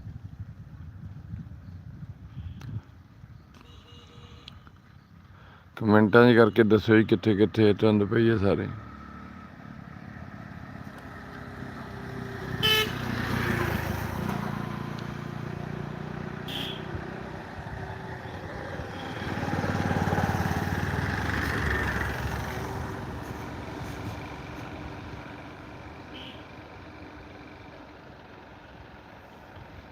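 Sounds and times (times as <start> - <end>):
vehicles passing: 2.9 - 29.9
car horn toot: 3.6 - 4.6, 12.6 - 13.1, 16.4 - 16.9, 26.1 - 26.5.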